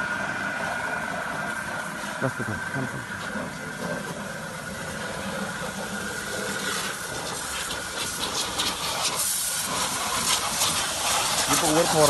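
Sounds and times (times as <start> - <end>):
sprayer motor humming: 0.0 - 12.0
water spray hissing: 4.9 - 12.0.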